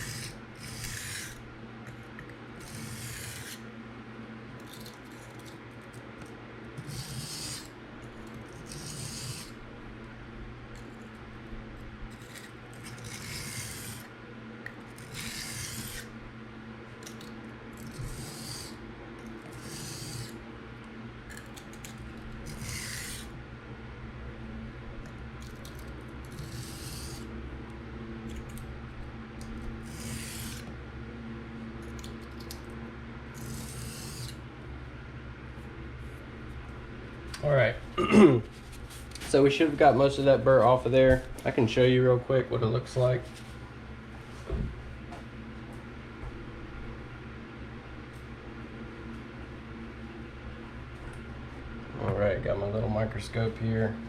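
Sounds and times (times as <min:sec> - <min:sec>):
knife scraping on sharpening stone: 0:22.5 - 0:23.3.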